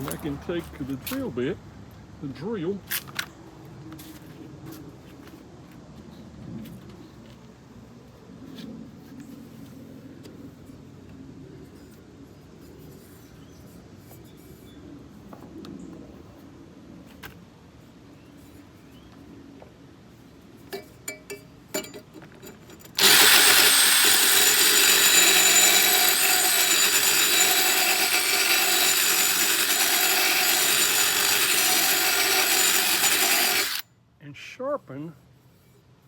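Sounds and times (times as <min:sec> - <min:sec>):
impact driver grinding metal blade: 0:23.0 - 0:33.8.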